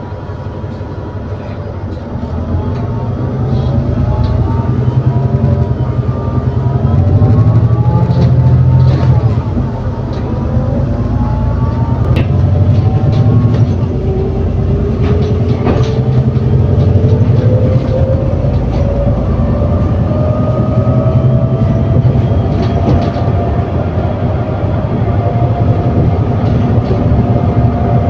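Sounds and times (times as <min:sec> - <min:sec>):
bus engine drone: 0:00.0 - 0:28.0
interior rattles and clicks: 0:06.7 - 0:10.9, 0:11.6 - 0:23.8, 0:25.0 - 0:28.0.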